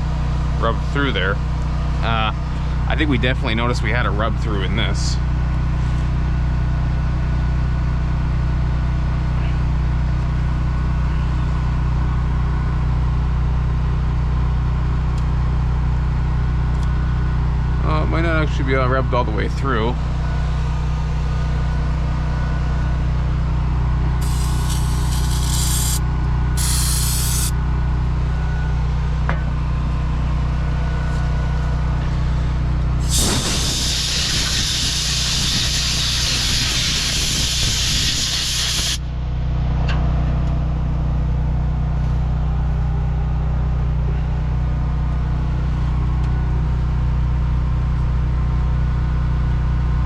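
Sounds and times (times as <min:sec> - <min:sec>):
steady machine drone: 0:23.2 - 0:37.8
spray hissing: 0:24.2 - 0:26.0, 0:26.6 - 0:27.5, 0:33.0 - 0:39.0.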